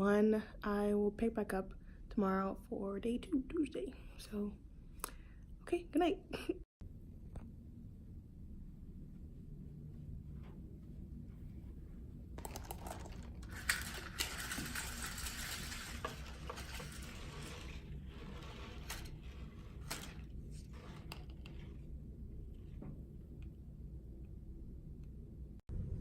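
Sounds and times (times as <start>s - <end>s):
rustling and crinkling: 10.3s - 23.0s.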